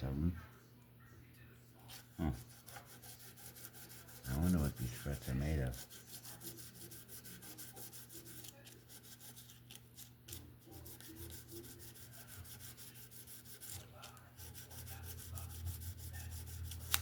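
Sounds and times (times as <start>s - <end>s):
sandpaper rubbing on frets: 2.2s - 9.5s, 10.7s - 17.0s.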